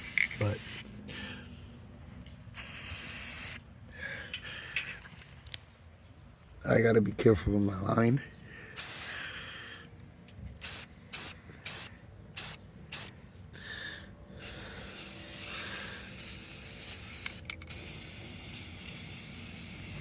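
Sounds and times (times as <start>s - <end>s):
spray can hissing: 0.0s - 0.8s, 2.6s - 3.6s, 8.8s - 9.3s, 10.6s - 13.1s, 14.4s - 20.0s.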